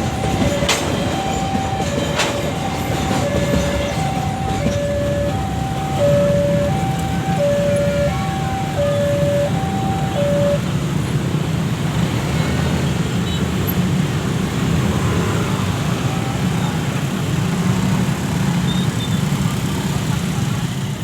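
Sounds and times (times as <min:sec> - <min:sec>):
two-tone electronic warning signal: 0:00.0 - 0:10.7
heavy engine rumbling: 0:00.0 - 0:11.9.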